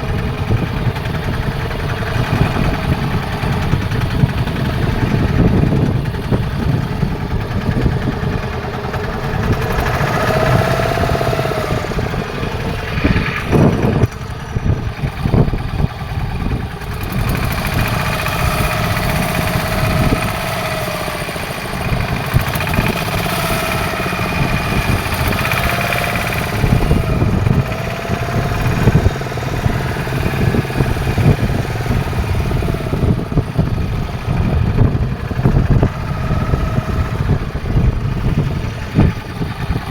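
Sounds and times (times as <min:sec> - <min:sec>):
boat engine running: 0:00.0 - 0:39.9.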